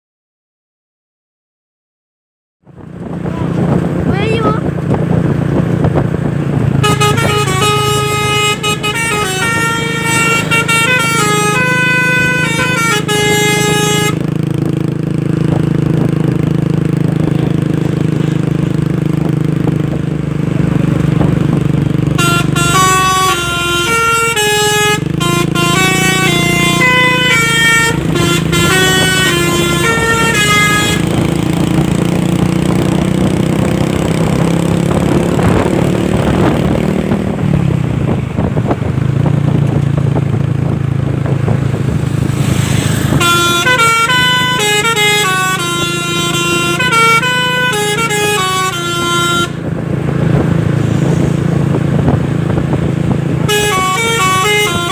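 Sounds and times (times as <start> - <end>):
truck engine low drone: 2.6 - 54.9
musical air horn playing a tune: 6.8 - 14.3, 22.1 - 31.6, 42.4 - 49.7, 53.4 - 54.9.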